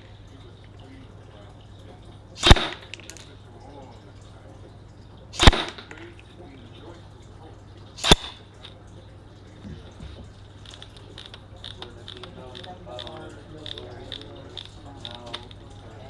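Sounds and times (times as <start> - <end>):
airsoft rifle shots: 2.4 - 3.3, 5.4 - 6.1, 8.0 - 8.4.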